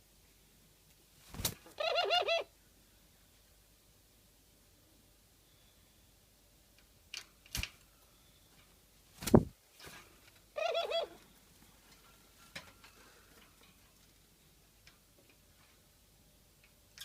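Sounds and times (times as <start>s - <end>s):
dove trilling call: 1.8s - 2.5s, 10.6s - 11.2s.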